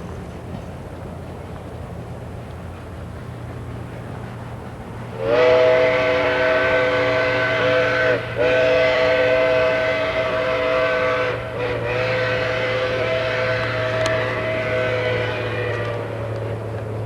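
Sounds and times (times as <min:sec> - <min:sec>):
steam whistle chord: 0:05.1 - 0:16.4.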